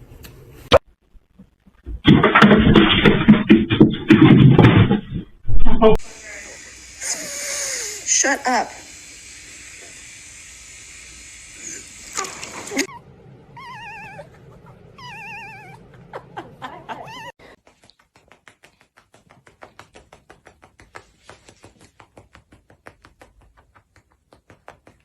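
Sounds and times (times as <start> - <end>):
cat yowling: 12.8 - 16.1, 16.9 - 17.4
faint rapid clicks: 17.6 - 25.0.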